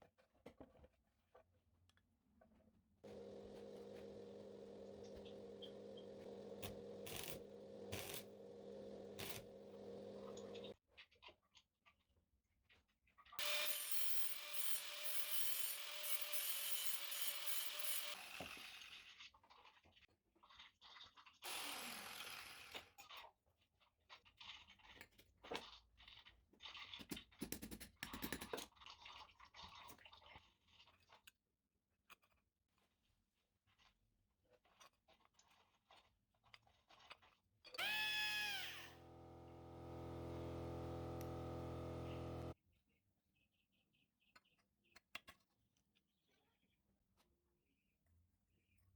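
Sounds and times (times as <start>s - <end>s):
power tool running on steel: 3.0s - 10.7s, 13.4s - 18.9s, 21.5s - 22.7s, 37.8s - 42.6s.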